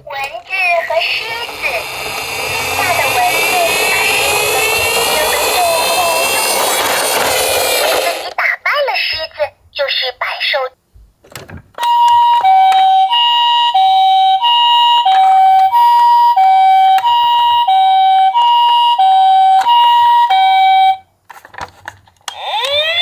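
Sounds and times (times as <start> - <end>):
two-tone siren: 0.7 - 8.2, 11.8 - 21.0, 22.3 - 23.0.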